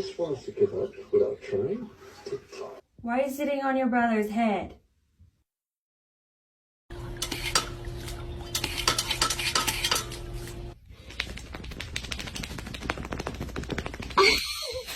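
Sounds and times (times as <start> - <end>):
steady low hum: 6.9 - 11.6
rapid clicks: 11.0 - 14.4.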